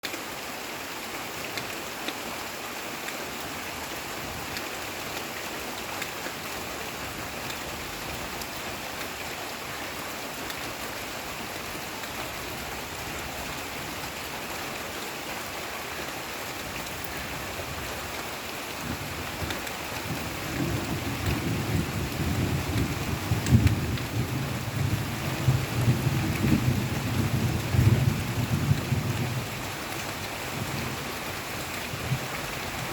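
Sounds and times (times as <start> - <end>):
heavy rain on leaves: 0.0 - 32.9
thunder rumble: 18.8 - 29.8.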